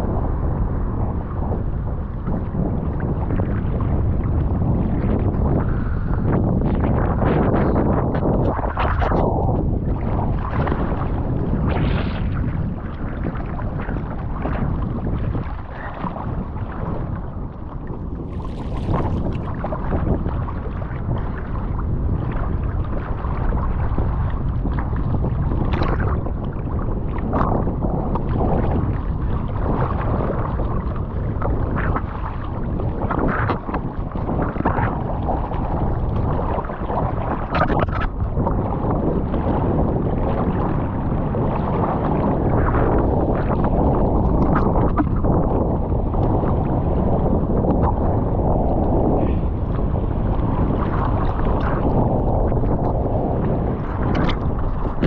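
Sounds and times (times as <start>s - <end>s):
low rumble: 0.0s - 33.7s, 34.8s - 55.0s
wind buffeting: 0.0s - 55.0s
water sloshing and splashing: 2.1s - 48.1s, 48.8s - 55.0s.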